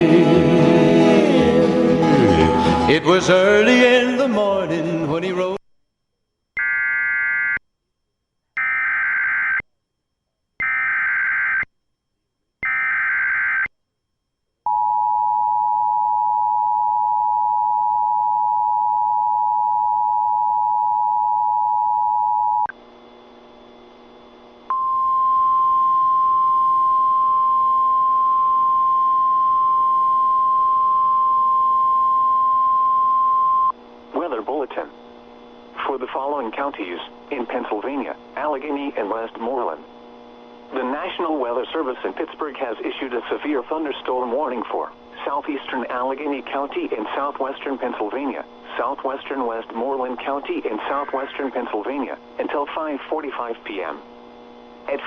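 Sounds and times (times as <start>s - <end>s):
single steady alarm tone: 6.2s - 22.8s, 24.7s - 33.8s.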